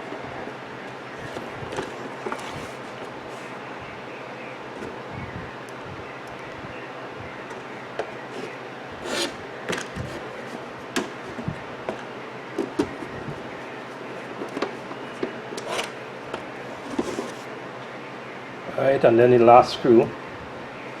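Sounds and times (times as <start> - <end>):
screws scraping: 8.3 - 9.4.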